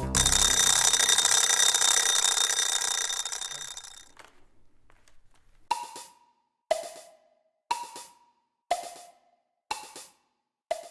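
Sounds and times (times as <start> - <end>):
clock ticking: 0.0 - 4.0.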